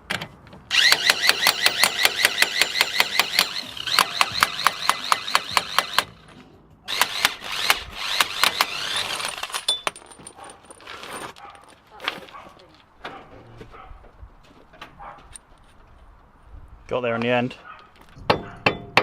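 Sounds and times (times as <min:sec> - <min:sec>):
impact wrench hammering: 0:00.8 - 0:06.1.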